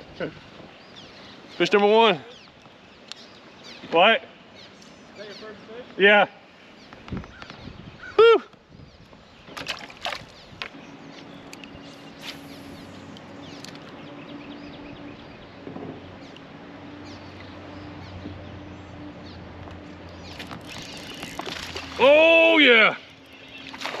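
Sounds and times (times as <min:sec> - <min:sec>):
person shouting: 0:08.2 - 0:08.5, 0:22.0 - 0:22.9
water sloshing: 0:09.4 - 0:14.0, 0:19.8 - 0:24.0.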